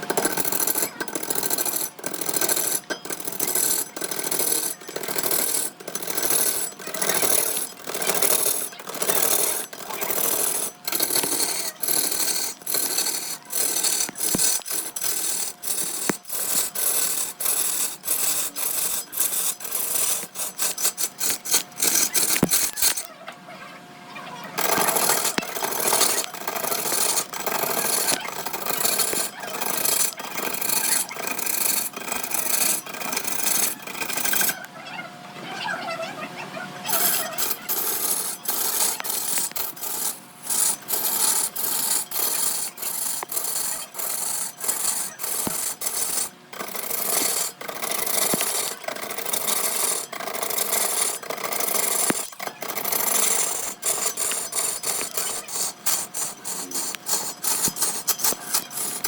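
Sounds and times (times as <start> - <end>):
tool scraping wood: 0.0 - 23.1, 24.6 - 34.7, 36.9 - 59.0.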